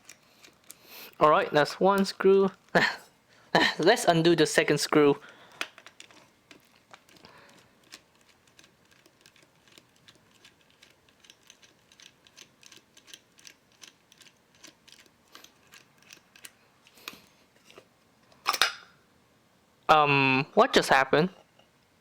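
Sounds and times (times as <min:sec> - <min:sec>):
screwdriver clicking on screw: 0:07.9 - 0:16.5.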